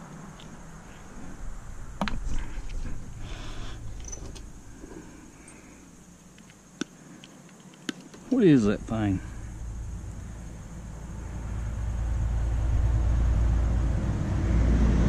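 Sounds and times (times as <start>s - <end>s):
metal clinks and knocks: 3.8s - 5.6s.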